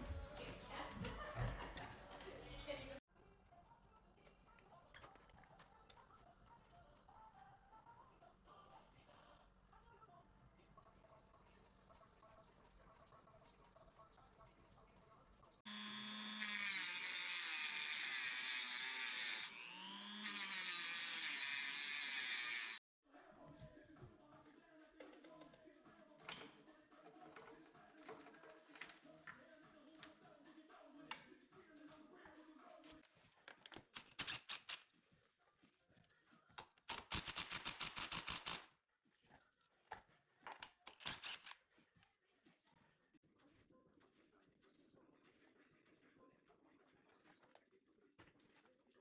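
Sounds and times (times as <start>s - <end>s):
electric power tool whirring: 15.7s - 22.8s
ratchet wrench clicking: 36.9s - 38.6s.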